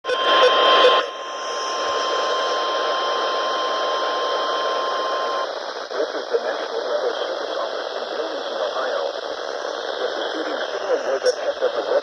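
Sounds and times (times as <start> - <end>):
warning alarm tone: 0.0 - 5.5
receiver static hiss: 0.0 - 12.0.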